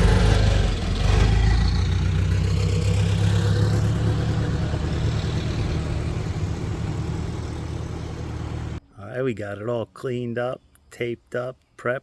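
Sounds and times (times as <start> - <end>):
truck engine running: 0.0 - 8.8.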